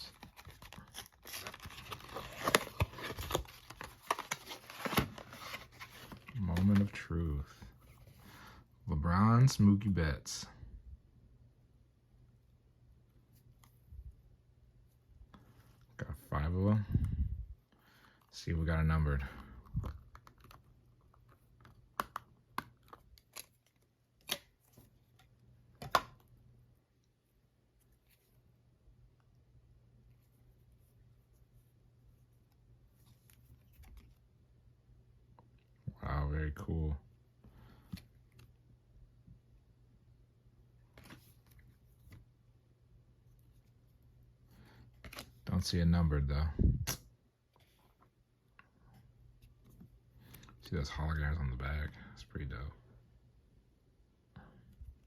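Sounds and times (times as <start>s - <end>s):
card packaging rustling and crinkling: 0.0s - 8.2s.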